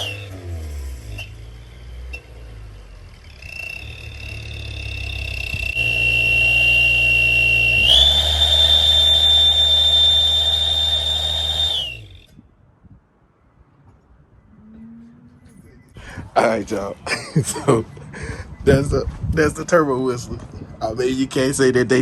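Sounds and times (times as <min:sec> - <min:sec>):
turbo whistle: 0:00.0 - 0:01.4, 0:03.2 - 0:12.4
engine droning low: 0:00.0 - 0:22.0.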